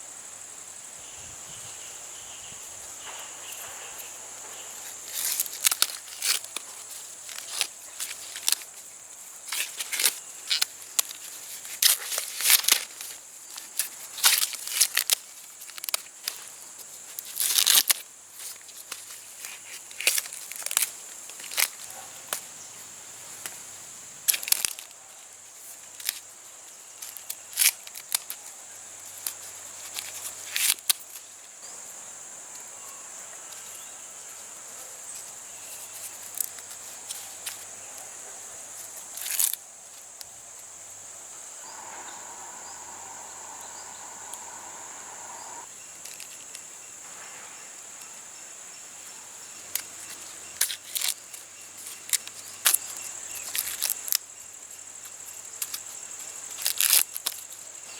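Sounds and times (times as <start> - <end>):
insects chirring: 0.0 - 57.9
faint steady tone: 41.2 - 45.8.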